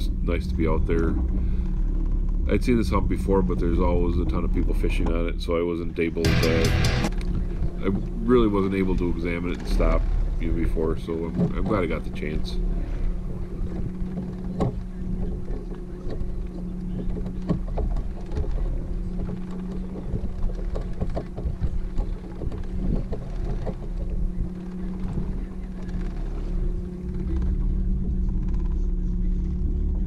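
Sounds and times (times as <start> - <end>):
boat motor running: 0.0 - 30.0
wind: 0.0 - 30.0.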